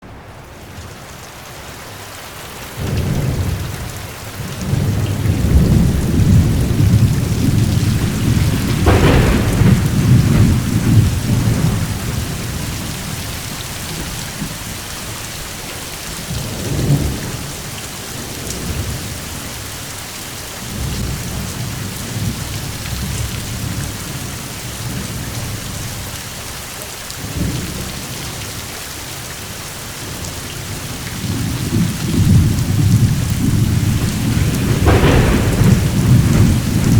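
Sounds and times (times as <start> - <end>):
steady rain: 0.0 - 36.9
rolling thunder: 2.7 - 19.6, 20.6 - 26.1, 30.0 - 36.9
thunder crack: 2.8 - 19.2, 30.7 - 36.9.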